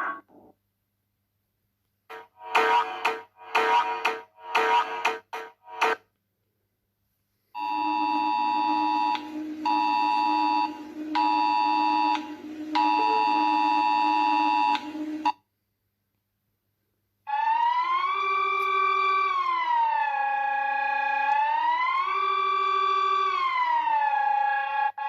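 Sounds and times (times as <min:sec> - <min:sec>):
siren-like electronic tone: 0:02.1 - 0:06.0, 0:07.6 - 0:15.4, 0:17.3 - 0:25.0
low hum: 0:07.6 - 0:15.3
electronic alarm tone: 0:07.6 - 0:15.4.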